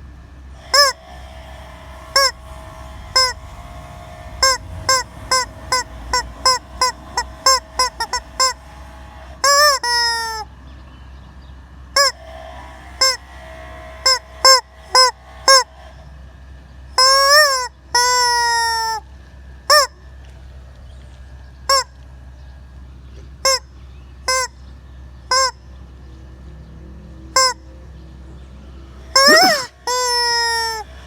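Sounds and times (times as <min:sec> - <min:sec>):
rubber chicken toy squawking: 0:00.6 - 0:01.0, 0:02.2 - 0:02.4, 0:03.2 - 0:03.4, 0:04.4 - 0:08.6, 0:09.4 - 0:10.5, 0:12.0 - 0:12.2, 0:13.0 - 0:13.2, 0:14.0 - 0:15.7, 0:17.0 - 0:19.1, 0:19.7 - 0:20.0, 0:21.7 - 0:21.9, 0:23.4 - 0:23.7, 0:24.3 - 0:24.6, 0:25.3 - 0:25.6, 0:27.4 - 0:27.6, 0:29.1 - 0:30.9.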